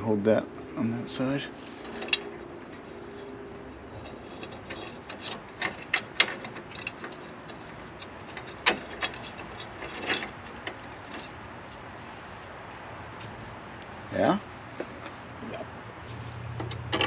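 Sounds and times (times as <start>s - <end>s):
metallic clicks and clanks of tools: 1.7s - 11.4s, 16.5s - 17.0s.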